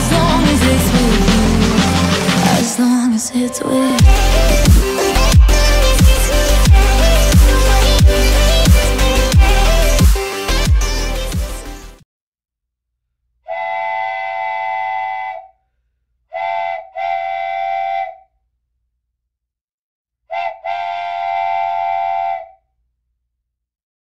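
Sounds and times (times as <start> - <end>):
multi-tone train whistle blasts: 4.0 - 6.4, 13.5 - 15.6, 16.3 - 18.3, 20.3 - 22.6.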